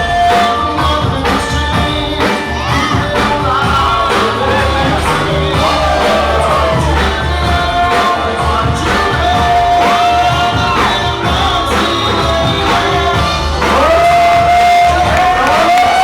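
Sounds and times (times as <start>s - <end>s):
heavy bass beat: 0.0s - 16.0s
person singing long notes: 0.0s - 16.0s
crowd shouting: 1.9s - 16.0s.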